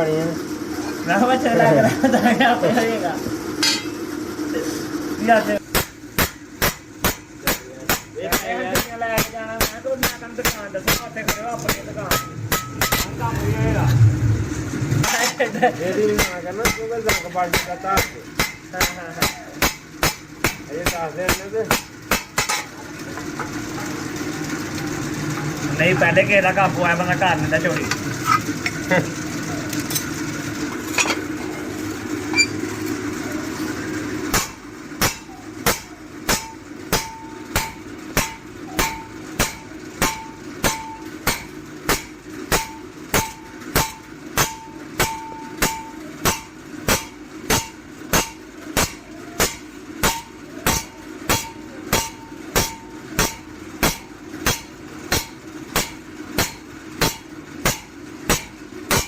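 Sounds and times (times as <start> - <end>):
steady machine hum: 0.0 - 59.0
hammer striking steel blade: 3.6 - 4.0, 5.7 - 13.1, 16.2 - 22.7, 34.3 - 59.0.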